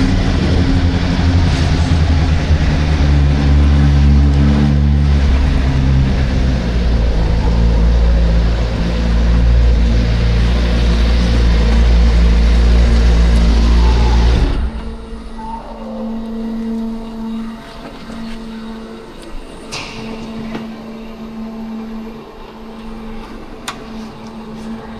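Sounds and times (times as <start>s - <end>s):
rushing noise: 0.0s - 17.7s.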